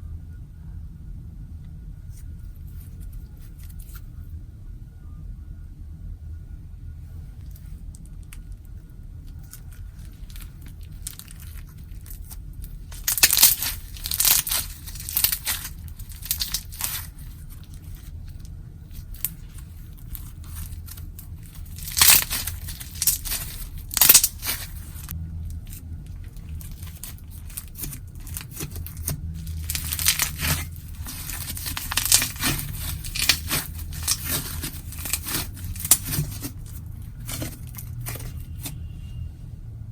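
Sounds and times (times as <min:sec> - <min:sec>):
low steady hum: 0:00.0 - 0:39.9
slime crackling and popping: 0:07.5 - 0:38.8.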